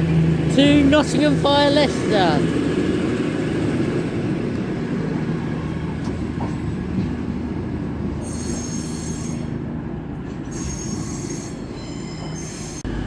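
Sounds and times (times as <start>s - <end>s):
train low rumble: 0.0s - 13.0s
high wheel squeal: 8.2s - 9.6s, 10.4s - 13.0s.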